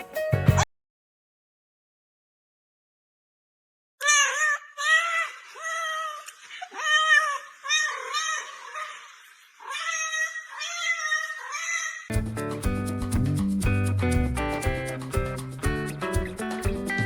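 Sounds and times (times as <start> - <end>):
cat meowing: 9.7 - 11.9.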